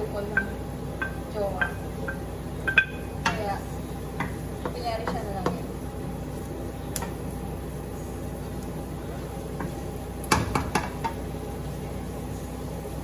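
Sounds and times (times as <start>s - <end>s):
utensil clanking against wok: 0.0s - 5.7s, 9.6s - 11.3s
food sizzling in a wok: 0.0s - 13.0s.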